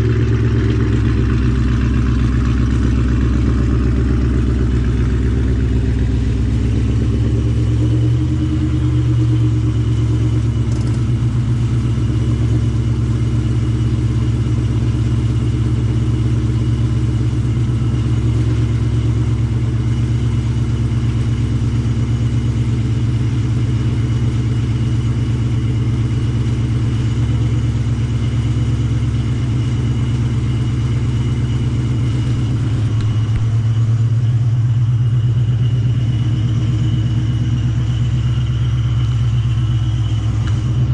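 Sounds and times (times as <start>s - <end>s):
car engine low exhaust note: 0.0s - 40.9s.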